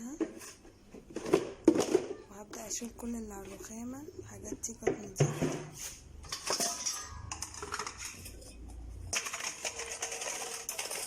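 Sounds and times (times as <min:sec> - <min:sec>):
kitchen items clicking on countertop: 0:06.3 - 0:11.0.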